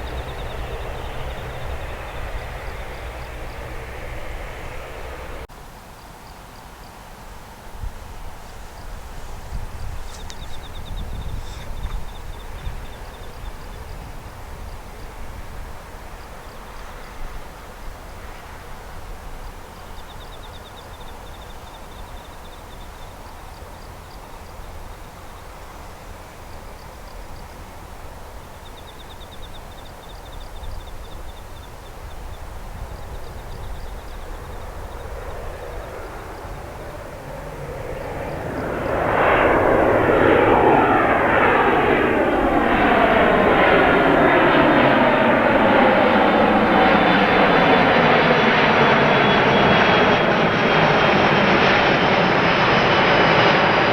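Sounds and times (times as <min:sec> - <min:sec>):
faint high chirping trills: 0:00.0 - 0:05.4
airliner engine noise: 0:00.0 - 0:05.5, 0:07.3 - 0:53.9
low background rumble: 0:00.0 - 0:05.5, 0:33.2 - 0:49.0.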